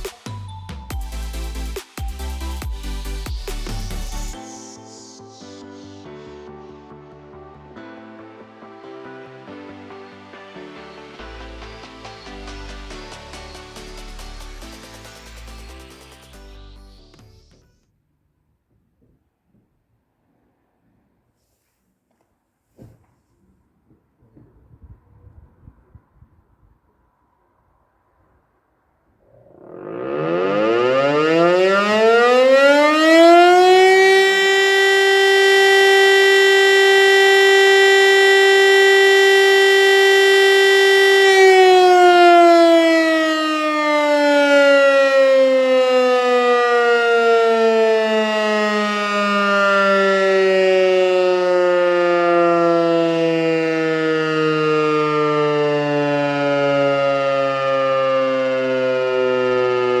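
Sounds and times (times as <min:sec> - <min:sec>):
electric motor siren winding: 0:29.3 - 1:00.0.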